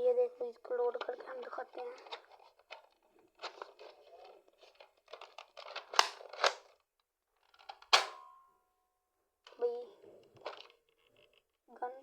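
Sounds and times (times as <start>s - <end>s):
plastic packaging crinkling: 1.8s - 6.8s
sharp plastic snaps: 5.1s - 6.8s, 7.5s - 8.3s.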